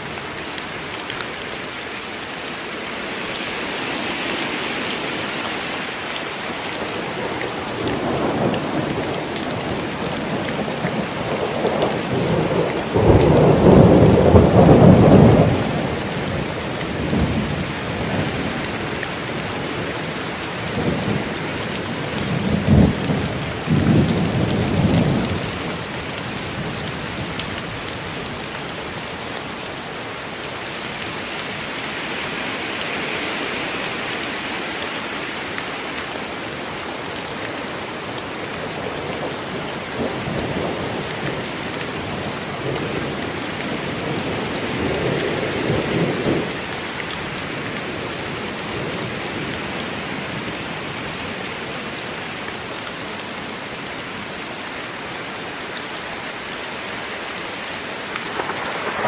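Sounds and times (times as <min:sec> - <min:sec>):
steady rain falling: 0:00.0 - 0:59.0
rolling thunder: 0:58.3 - 0:59.0.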